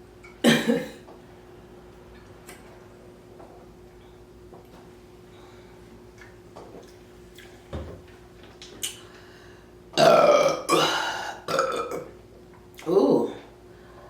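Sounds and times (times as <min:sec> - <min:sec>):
loud burp: 0:00.4 - 0:01.0, 0:10.0 - 0:12.1.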